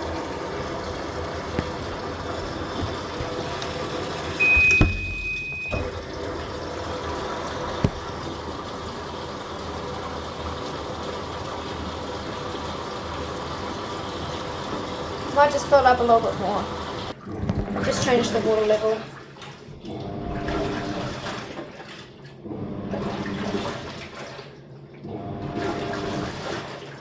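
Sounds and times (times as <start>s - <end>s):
washing machine water noise: 0.0s - 27.0s
high electronic beep: 4.4s - 5.9s
knock: 4.5s - 5.8s.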